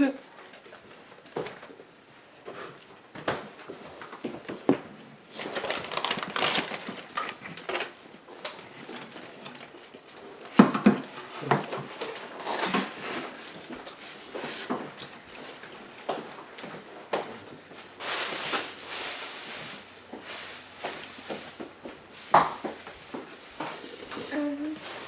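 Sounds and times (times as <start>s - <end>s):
people chewing food: 0.0s - 18.0s, 20.1s - 25.0s
packaging rustling: 4.5s - 14.7s.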